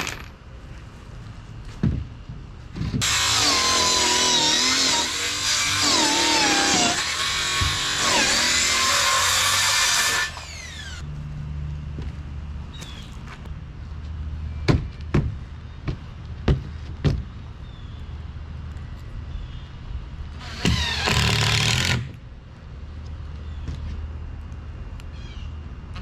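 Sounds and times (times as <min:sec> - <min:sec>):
harsh power tool burst: 0:03.0 - 0:11.0, 0:20.4 - 0:22.1
steady low hum: 0:09.0 - 0:26.0.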